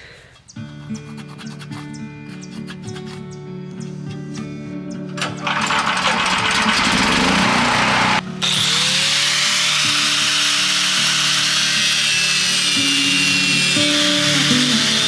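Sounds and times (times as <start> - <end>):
angle grinder cutting steel: 5.2 - 15.0.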